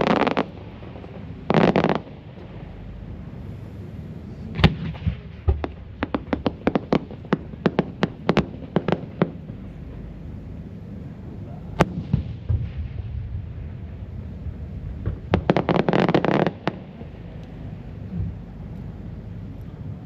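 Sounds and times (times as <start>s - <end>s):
firework sharp cracks: 0.0s - 2.8s, 4.5s - 9.6s, 11.8s - 14.0s, 14.9s - 17.5s
firework bang: 4.5s - 9.4s, 11.8s - 14.1s, 15.0s - 17.1s.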